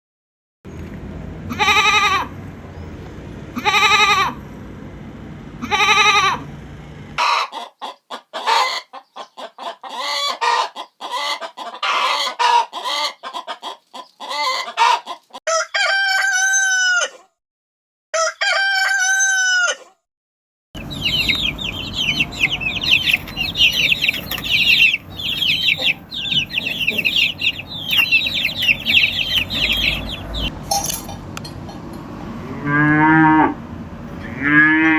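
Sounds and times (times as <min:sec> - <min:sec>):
hens clucking: 0:01.4 - 0:04.4, 0:05.6 - 0:06.5, 0:07.2 - 0:15.6, 0:20.8 - 0:30.5
chicks peeping: 0:07.2 - 0:15.4, 0:20.8 - 0:30.5
rooster crowing: 0:18.2 - 0:19.8, 0:20.8 - 0:30.5
short pitched calls: 0:20.8 - 0:30.5.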